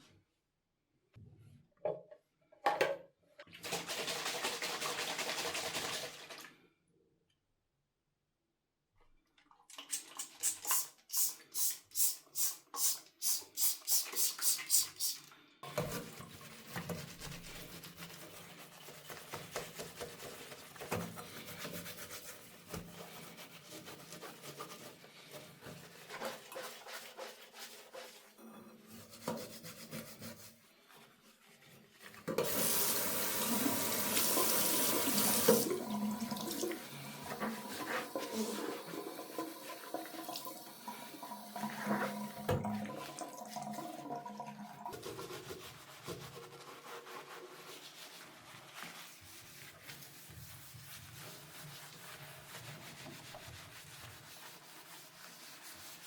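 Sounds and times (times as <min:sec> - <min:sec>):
water splashing and rinsing: 0:03.5 - 0:06.7, 0:32.2 - 0:56.0
faint scrubbing: 0:15.7 - 0:32.2, 0:37.0 - 0:39.9, 0:44.9 - 0:56.0
water running into sink: 0:32.3 - 0:45.4.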